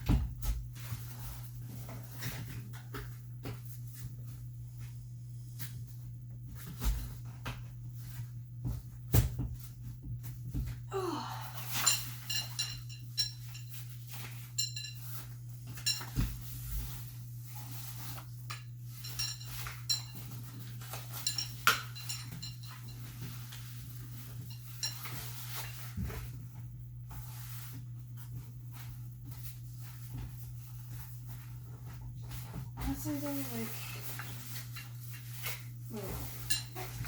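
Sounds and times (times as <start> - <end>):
metal frame parts clinking: 11.7 - 16.2, 18.9 - 23.1.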